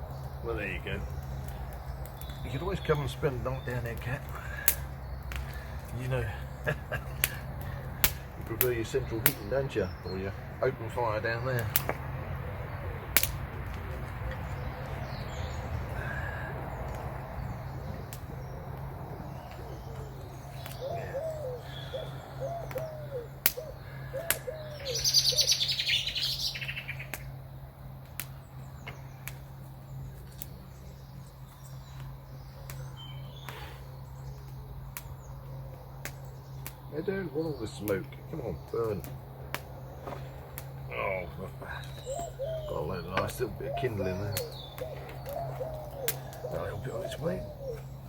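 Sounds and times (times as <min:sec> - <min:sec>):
small bird singing: 0:00.0 - 0:48.0
steady low hum: 0:00.0 - 0:48.0
sharp clicks: 0:07.2 - 0:09.5, 0:11.6 - 0:12.1, 0:13.1 - 0:14.4, 0:44.3 - 0:46.4
bird cooing: 0:12.2 - 0:13.1, 0:14.5 - 0:27.0, 0:40.9 - 0:48.0.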